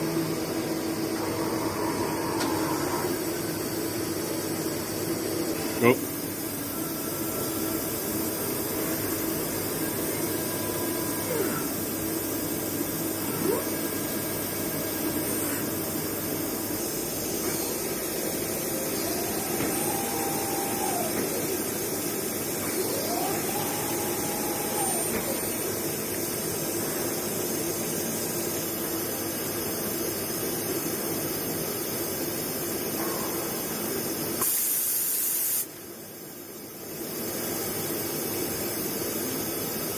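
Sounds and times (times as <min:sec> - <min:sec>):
machine whining tone: 0:00.0 - 0:27.5
machine hissing: 0:00.9 - 0:28.2.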